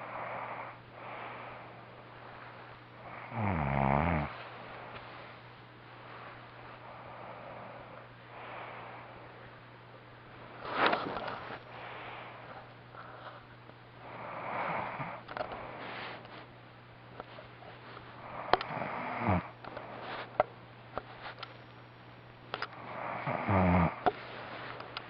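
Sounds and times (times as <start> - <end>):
man snoring: 3.1 - 4.4, 18.3 - 19.5, 22.9 - 24.0.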